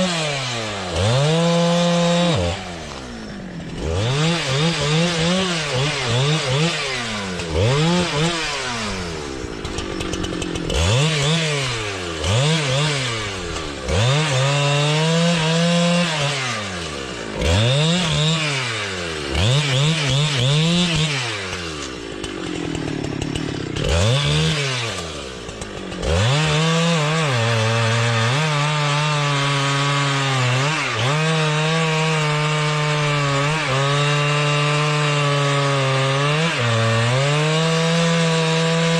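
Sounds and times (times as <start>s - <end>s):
chainsaw engine revving: 0.0s - 38.9s.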